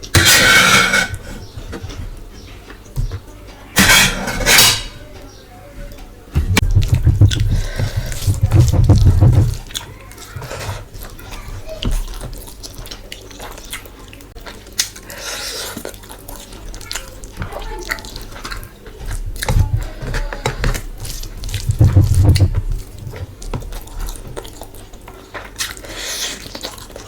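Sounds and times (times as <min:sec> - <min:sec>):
low thuds: 0:06.3 - 0:09.7, 0:19.2 - 0:23.8
wet chewing and lip smacks: 0:11.9 - 0:19.6, 0:22.8 - 0:27.0.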